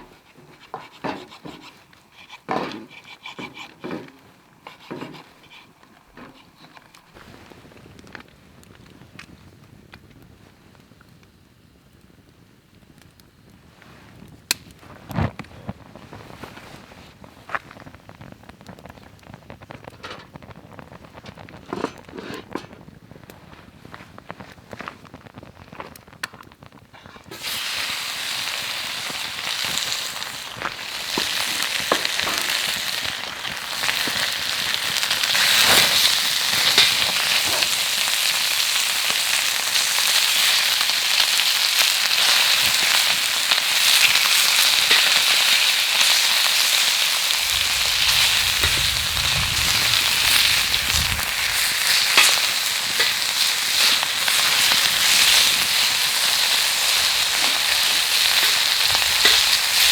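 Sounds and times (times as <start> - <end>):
food sizzling on hot griddle: 27.0 - 59.9
low rumble: 47.4 - 51.8.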